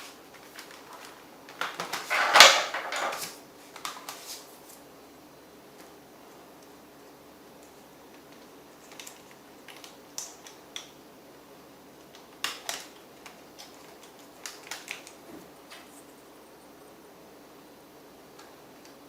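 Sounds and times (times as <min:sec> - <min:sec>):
small parts clicking and tapping: 0:07.6 - 0:11.0, 0:12.0 - 0:16.1.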